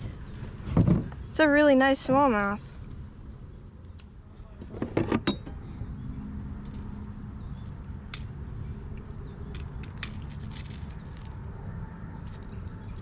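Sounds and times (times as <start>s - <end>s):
wind rumbling on microphone: 0.0s - 1.4s
light clicks and rattles: 9.0s - 11.5s.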